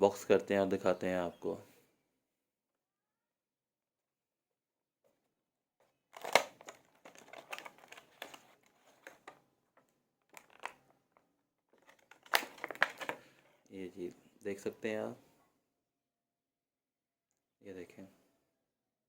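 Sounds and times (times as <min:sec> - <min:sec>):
packaging crinkling and rustling: 0:06.1 - 0:13.6.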